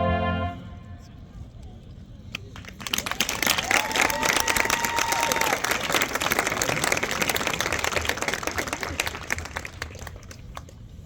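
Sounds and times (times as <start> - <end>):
audience applause: 2.6 - 10.7.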